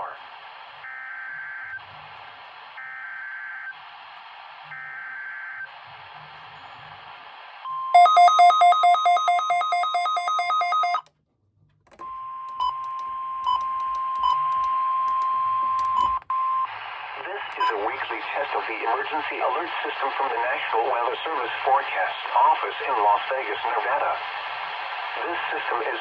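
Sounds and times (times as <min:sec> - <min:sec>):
alert tone: 0:08.0 - 0:11.0
rapid loud beeping: 0:08.0 - 0:11.0
radio hiss: 0:16.8 - 0:26.0.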